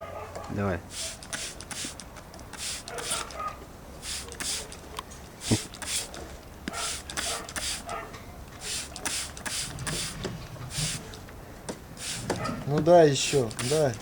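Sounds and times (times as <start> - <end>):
water splashing and spraying: 0.9 - 3.4, 4.0 - 4.8, 5.4 - 6.2, 6.8 - 7.9, 8.6 - 11.2, 11.9 - 12.5, 13.2 - 13.9
dog snapping and gulping water: 1.1 - 11.2.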